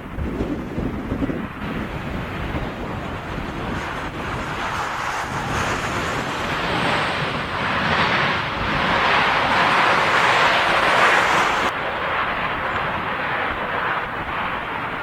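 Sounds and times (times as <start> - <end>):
jet engines roaring: 0.0 - 15.0.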